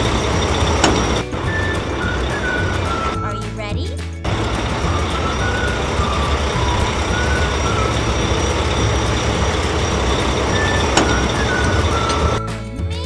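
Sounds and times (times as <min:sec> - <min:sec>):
truck engine rumble: 0:00.0 - 0:13.0.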